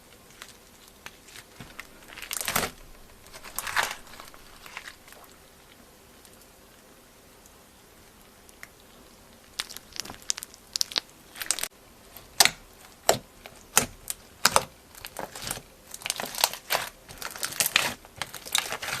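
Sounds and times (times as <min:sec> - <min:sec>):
crunchy slime squeezed by hand: 0:01.1 - 0:05.4, 0:09.5 - 0:11.7.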